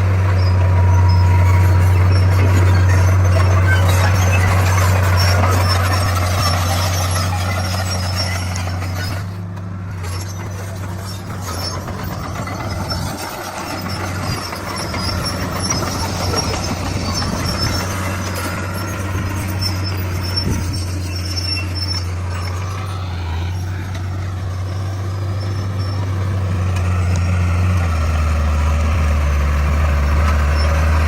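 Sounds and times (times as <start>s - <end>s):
bulldozer diesel engine running: 0.0s - 31.0s
rough mechanical noise: 0.0s - 31.0s.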